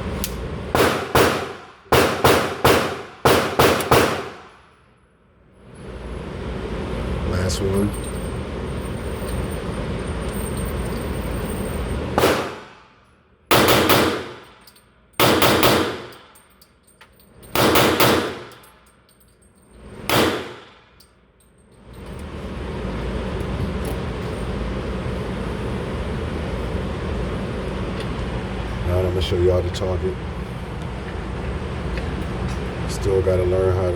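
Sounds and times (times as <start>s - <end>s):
steady background noise: 0.0s - 33.9s
pistol shots: 0.7s - 4.5s, 12.2s - 12.8s, 13.5s - 14.5s, 15.2s - 16.3s, 17.6s - 18.6s, 20.1s - 20.8s.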